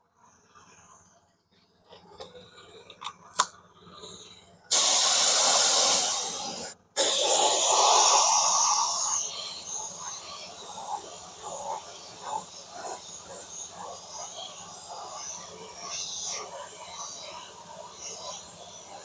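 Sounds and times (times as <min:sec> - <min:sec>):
compressed air hissing from nozzle: 0:03.9 - 0:19.0.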